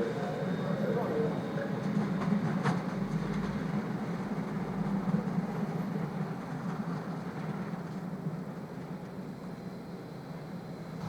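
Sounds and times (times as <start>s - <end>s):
electric train hum: 0.0s - 11.0s
rolling rail noise: 0.0s - 11.0s.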